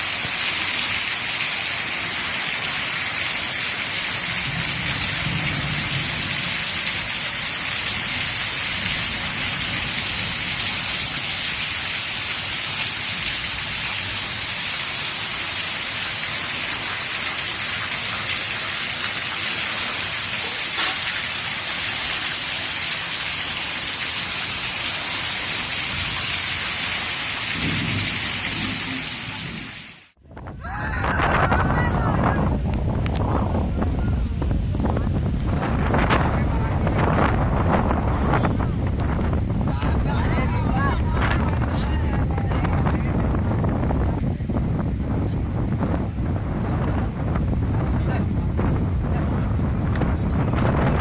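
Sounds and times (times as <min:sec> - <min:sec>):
heavy rain falling: 0:00.0 - 0:30.2.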